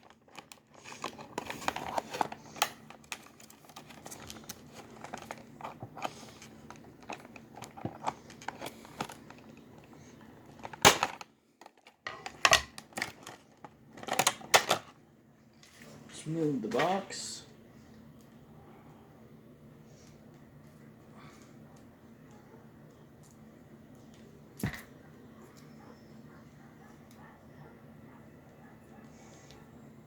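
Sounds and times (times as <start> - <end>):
packaging crinkling: 0.0 - 14.8.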